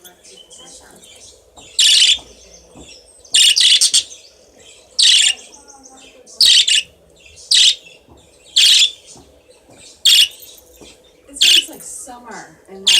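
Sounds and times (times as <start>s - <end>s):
cage birds chirping: 0.0s - 12.9s.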